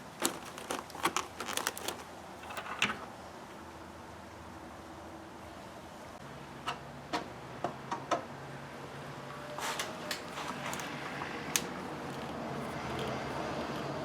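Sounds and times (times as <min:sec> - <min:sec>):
soft rustling and tapping: 0:00.0 - 0:02.6.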